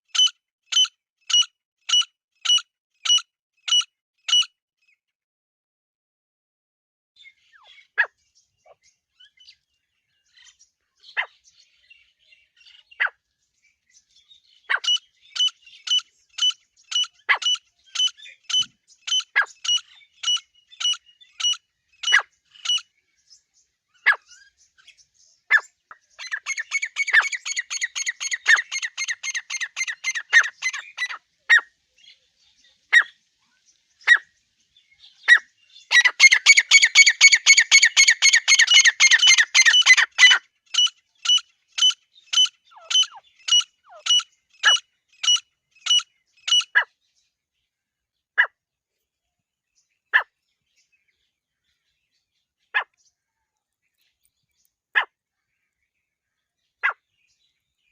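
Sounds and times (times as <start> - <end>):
partridge calls: 14.7 - 22.9, 25.5 - 32.1, 32.9 - 33.2, 34.0 - 34.3, 35.0 - 46.9, 56.8 - 57.0.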